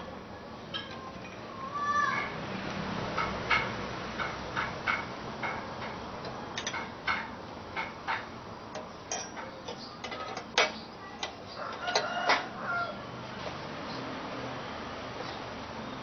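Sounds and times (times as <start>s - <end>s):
small hard parts clicking together: 3.2s - 12.5s.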